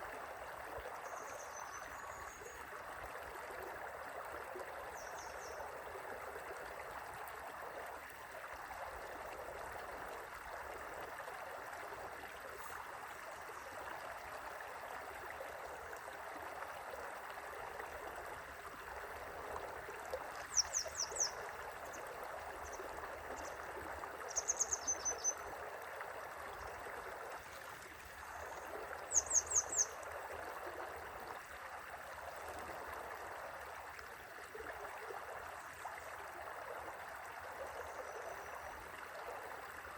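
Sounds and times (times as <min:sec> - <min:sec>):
river water flowing: 0:00.0 - 0:39.9
bird chirping: 0:29.1 - 0:29.9.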